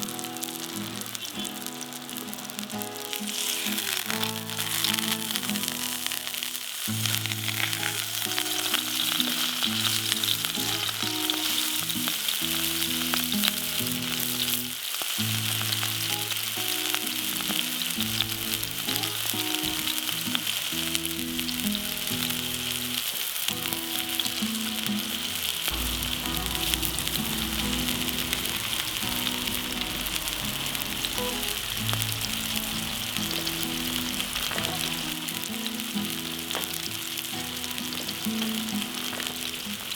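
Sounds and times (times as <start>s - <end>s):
food sizzling while frying: 0.0s - 39.9s
slow background music: 0.0s - 39.9s.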